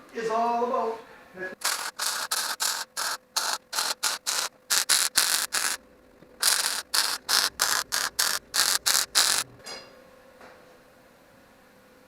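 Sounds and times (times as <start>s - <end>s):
welding arc crackling: 1.6s - 5.8s, 6.4s - 9.5s.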